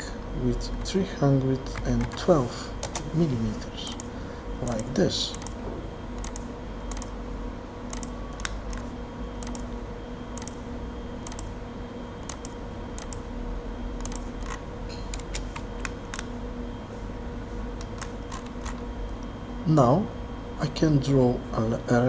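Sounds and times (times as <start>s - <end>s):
steady low hum: 0.0s - 22.0s
computer keyboard and mouse clicks: 1.6s - 3.1s, 5.3s - 5.6s, 6.2s - 7.1s, 7.9s - 9.7s, 10.4s - 10.6s, 11.2s - 11.5s, 12.2s - 13.2s, 14.0s - 16.3s, 17.8s - 18.8s.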